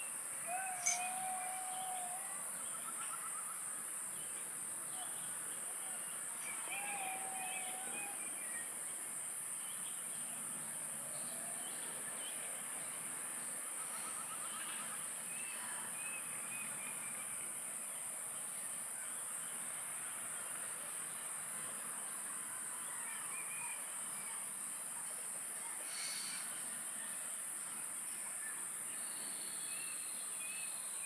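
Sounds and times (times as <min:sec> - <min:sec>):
high-pitched insect chorus: 0:00.0 - 0:12.1
bird trill: 0:00.5 - 0:02.1
short bird chirps: 0:00.7 - 0:01.2.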